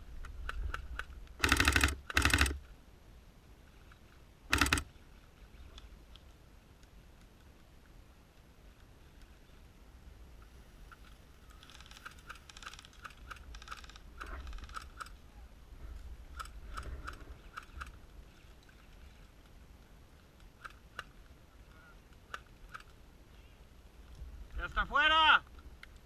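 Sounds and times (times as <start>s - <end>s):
airsoft guns firing clicks: 0.2s - 2.7s, 4.5s - 4.9s.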